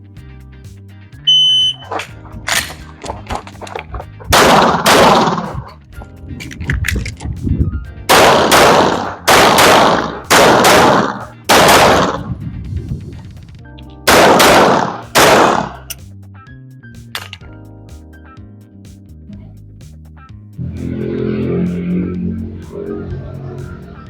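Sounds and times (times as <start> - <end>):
pistol shots with echo: 4.3 - 5.6, 8.1 - 12.3, 14.1 - 15.9.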